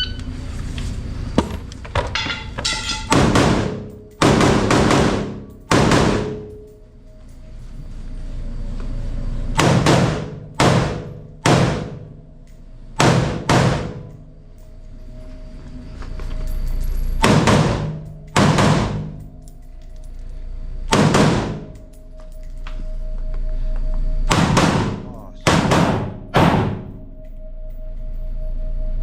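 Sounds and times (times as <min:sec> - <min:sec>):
rifle shots echoing indoors: 0:03.0 - 0:06.8, 0:09.6 - 0:14.3, 0:17.2 - 0:19.9, 0:20.9 - 0:22.5, 0:24.3 - 0:27.4.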